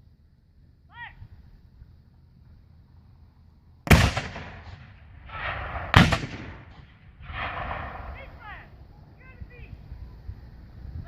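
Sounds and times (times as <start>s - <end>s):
gun blasts with rolling echo: 3.9s - 8.8s.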